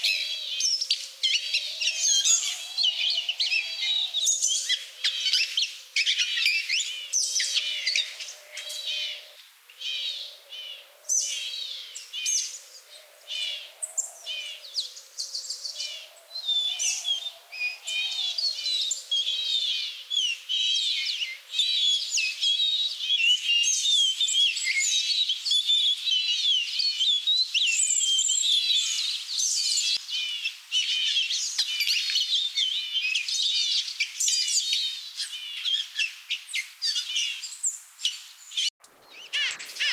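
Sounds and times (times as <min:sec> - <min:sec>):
songbirds chirping and twittering: 0:00.0 - 0:39.9.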